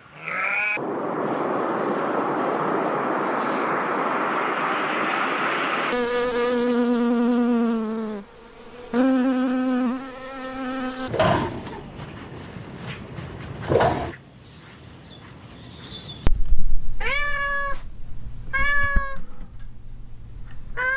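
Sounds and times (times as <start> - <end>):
rushing noise: 0.8 - 6.2
flying insect buzzing: 5.9 - 11.1.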